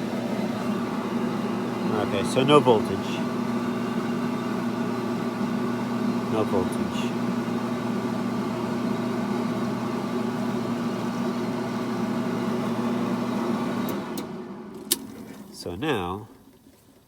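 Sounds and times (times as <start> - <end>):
dryer motor hum: 0.0 - 14.9.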